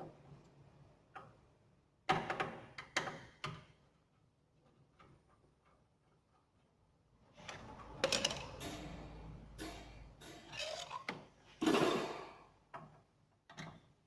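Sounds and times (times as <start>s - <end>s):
hard parts clattering and scraping: 7.4s - 12.3s.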